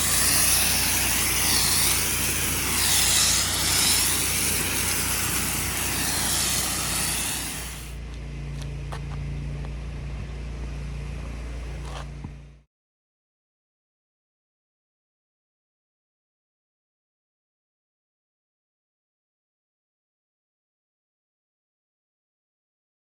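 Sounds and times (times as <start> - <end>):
machine humming: 0.0 - 8.0
pressure washer spray hissing: 0.0 - 8.0.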